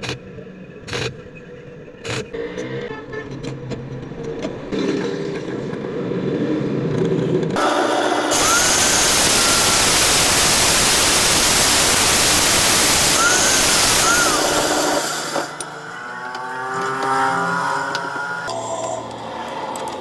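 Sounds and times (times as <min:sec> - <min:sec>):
angle grinder grinding: 0:07.6 - 0:18.5.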